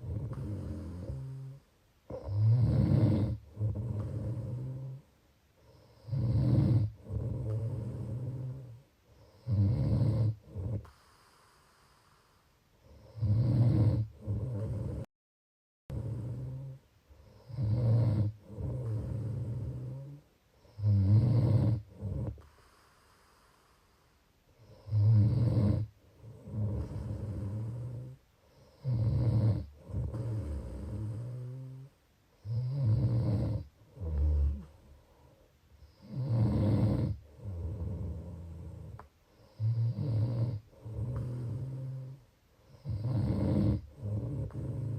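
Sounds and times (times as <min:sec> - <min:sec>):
low rasping snore: 0:00.0 - 0:15.1, 0:15.9 - 0:23.9, 0:24.6 - 0:35.0, 0:35.8 - 0:44.9
quiet long breath: 0:10.8 - 0:13.1, 0:22.2 - 0:24.9.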